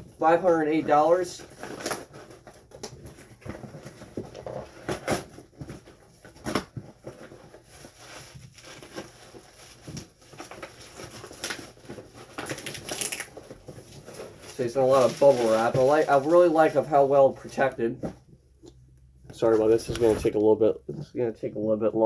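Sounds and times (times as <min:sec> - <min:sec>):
packaging rustling and crinkling: 0:00.0 - 0:17.7, 0:19.4 - 0:20.4
bubble wrap crackling: 0:06.3 - 0:16.9.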